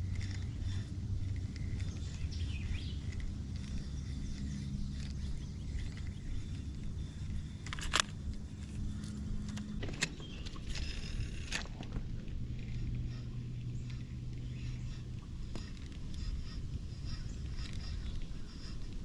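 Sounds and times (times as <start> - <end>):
sharp clicks: 0.0 - 12.0
birds chirping: 0.0 - 19.0
low rumble with faint hum: 0.0 - 19.0.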